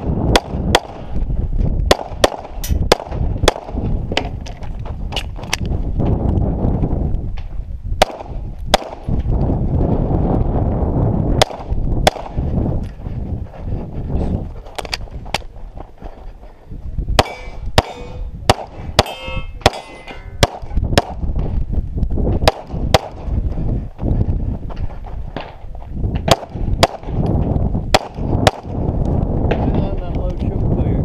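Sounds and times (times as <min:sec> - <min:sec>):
pistol shots: 0:01.9 - 0:03.8, 0:08.0 - 0:09.1, 0:11.4 - 0:12.4, 0:17.2 - 0:21.2, 0:26.2 - 0:27.2, 0:27.9 - 0:28.7
metallic ringing: 0:17.2 - 0:18.4, 0:19.0 - 0:20.4.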